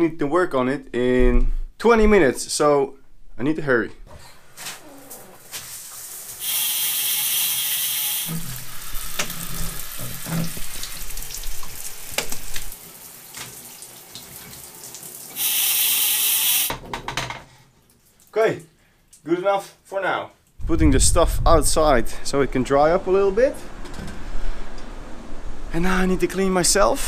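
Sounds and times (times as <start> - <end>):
water spraying on bike: 4.5 - 16.7.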